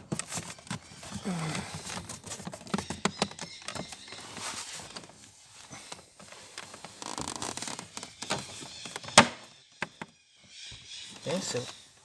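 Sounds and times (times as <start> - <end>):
plastic trim scraping and rustling: 0.0 - 9.4.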